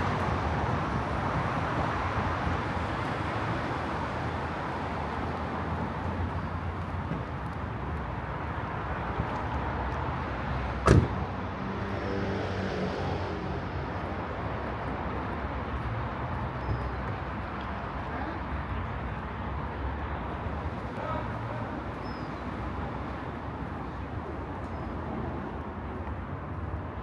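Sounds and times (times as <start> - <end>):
traffic hum: 0.0 - 27.0.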